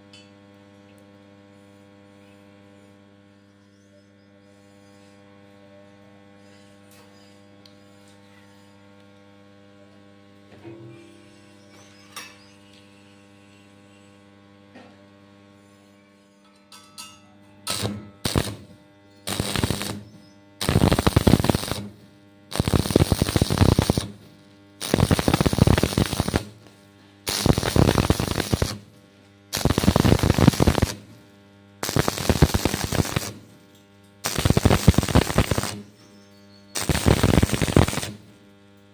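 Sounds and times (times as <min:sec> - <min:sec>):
electrical hum: 0:17.4 - 0:38.9
welding arc crackling: 0:17.7 - 0:36.1, 0:36.7 - 0:38.9.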